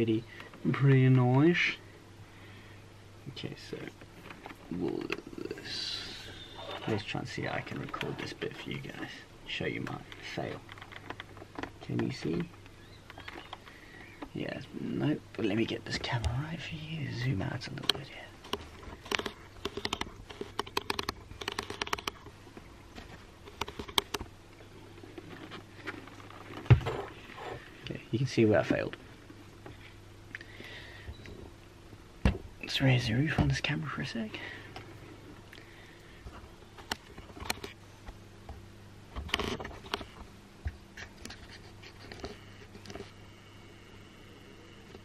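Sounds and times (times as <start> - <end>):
faint low hum: 0.0 - 45.0
clatter and rustle: 3.8 - 5.6, 7.4 - 9.2, 9.8 - 14.4, 17.6 - 30.0, 36.2 - 43.2
handling clicks and taps: 17.8 - 22.7, 23.5 - 24.3.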